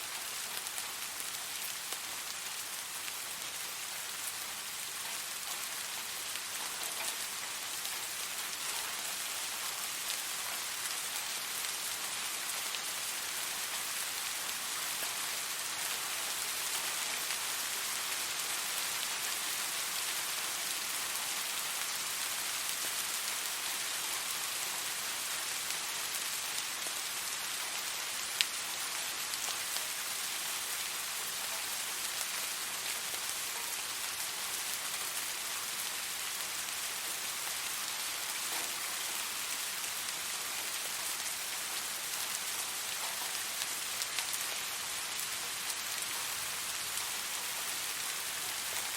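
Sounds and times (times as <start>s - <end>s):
steady rain patter: 0.0s - 48.9s.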